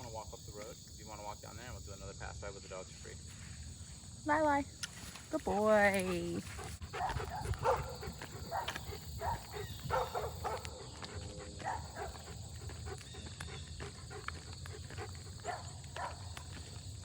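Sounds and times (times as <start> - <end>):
dog barking: 6.9 - 13.3, 14.8 - 16.4.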